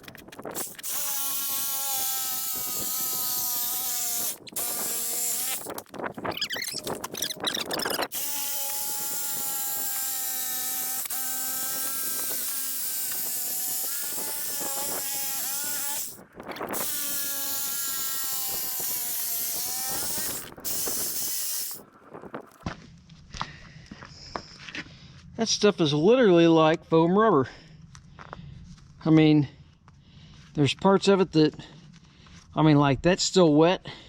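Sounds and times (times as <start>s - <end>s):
reciprocating saw cutting tire: 0.4s - 21.9s.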